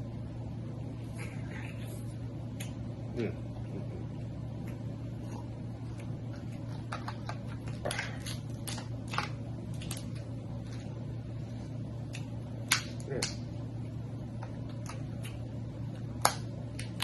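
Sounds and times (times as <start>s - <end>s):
steady low hum: 0.0s - 17.0s
crab shell cracking: 6.8s - 10.3s.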